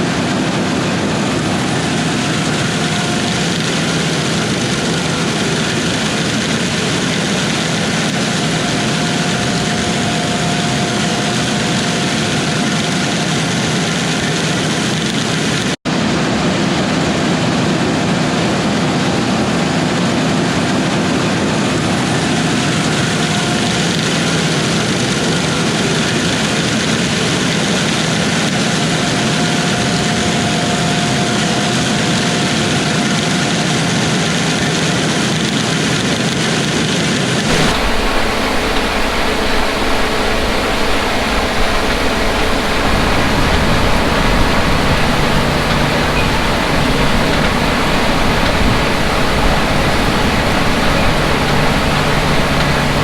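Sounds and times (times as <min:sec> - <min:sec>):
faint steady whine: 0:00.0 - 0:14.3, 0:37.5 - 0:53.0
diesel harvest machinery running: 0:00.0 - 0:15.7, 0:37.5 - 0:53.0.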